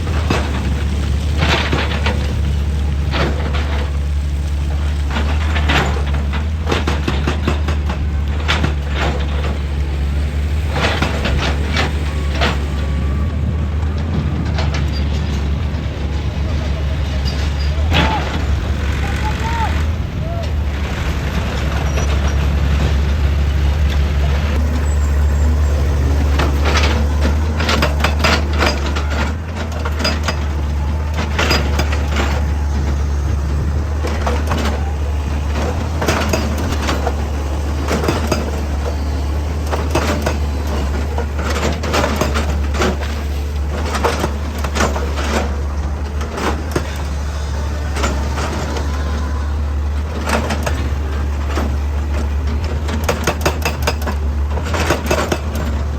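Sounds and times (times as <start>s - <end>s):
excavator diesel engine running: 0.0s - 55.9s
sharp metal clanks and knocks: 24.6s - 49.0s, 50.0s - 55.9s.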